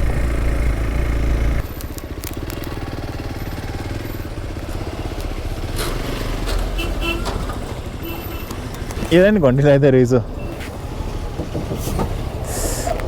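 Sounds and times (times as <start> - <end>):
motorcycle engine running: 0.0 - 8.9.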